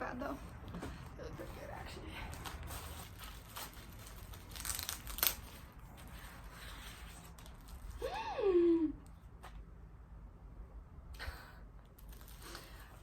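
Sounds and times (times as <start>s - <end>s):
packaging rustling and tearing: 1.4s - 8.0s, 12.0s - 13.0s.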